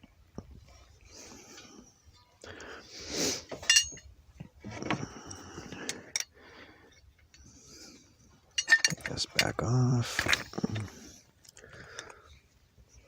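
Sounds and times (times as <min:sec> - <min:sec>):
metal tools clinking: 0:03.5 - 0:04.1, 0:08.5 - 0:11.0.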